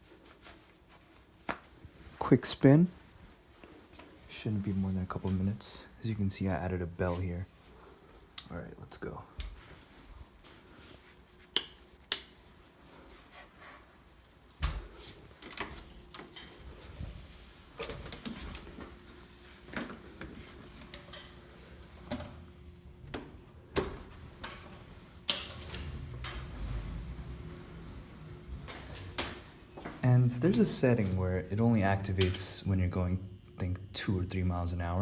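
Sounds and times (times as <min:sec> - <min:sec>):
faint motor whine: 0:14.6 - 0:35.0.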